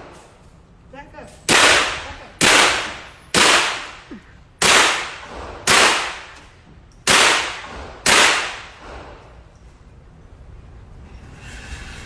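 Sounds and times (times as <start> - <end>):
gunshots: 1.5 - 4.0, 4.6 - 6.4, 7.1 - 9.1.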